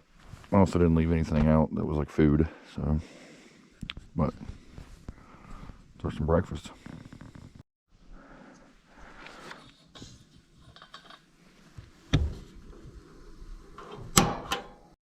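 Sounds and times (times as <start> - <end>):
faint handling and rustling: 0.0 - 0.7, 3.9 - 6.0.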